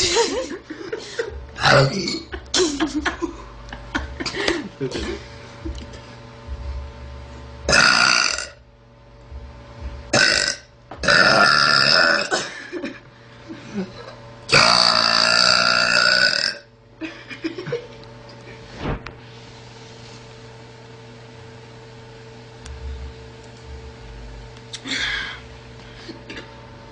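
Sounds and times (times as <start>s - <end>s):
girl belching loudly: 7.7s - 8.6s, 10.1s - 12.4s, 14.5s - 16.7s.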